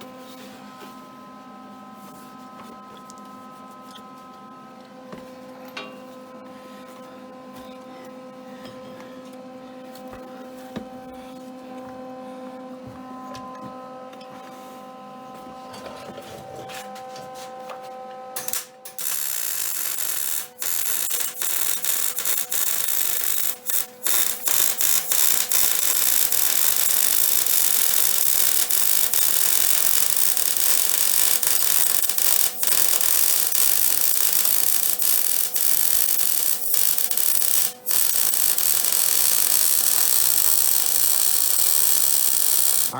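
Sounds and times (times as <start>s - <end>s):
steady hum of held tones: 0.0s - 28.2s
welding arc hissing and crackling: 18.4s - 42.9s.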